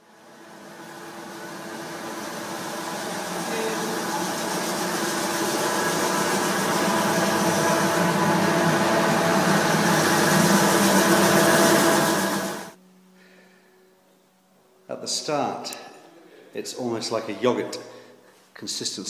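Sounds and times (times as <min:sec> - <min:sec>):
floor grinding machine: 0:00.0 - 0:12.8.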